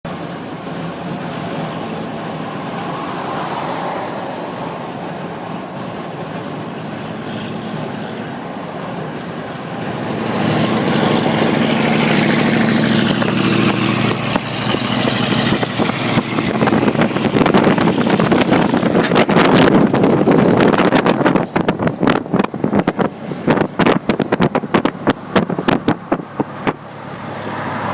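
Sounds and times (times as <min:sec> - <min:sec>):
dump truck diesel engines: 0:00.0 - 0:27.9
wind buffeting microphone: 0:08.6 - 0:26.9.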